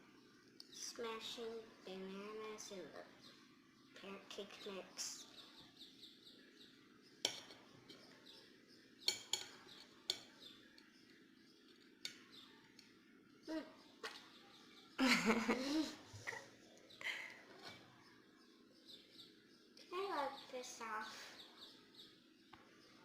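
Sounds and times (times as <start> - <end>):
birds chirping: 0.0 - 23.0
utensil clinking against bowl: 9.0 - 10.9.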